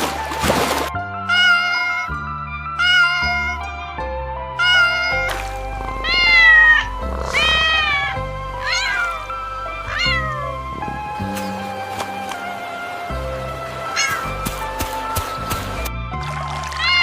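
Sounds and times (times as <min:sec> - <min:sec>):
background music sustained notes: 0:00.0 - 0:17.0
cat meowing: 0:01.3 - 0:02.2, 0:02.8 - 0:03.7, 0:04.6 - 0:11.6, 0:13.8 - 0:14.4, 0:16.8 - 0:17.0.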